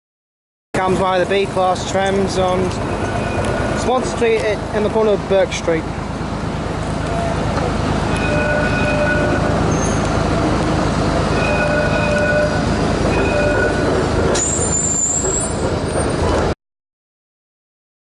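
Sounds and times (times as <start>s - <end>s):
electric tram humming: 0.8s - 16.6s
high squeal of wheels: 8.1s - 10.2s, 11.3s - 16.4s.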